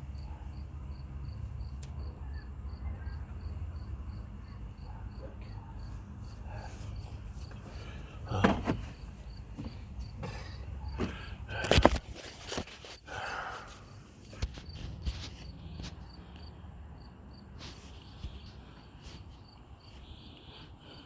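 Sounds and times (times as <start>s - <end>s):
insect chirping: 15.4s - 21.0s.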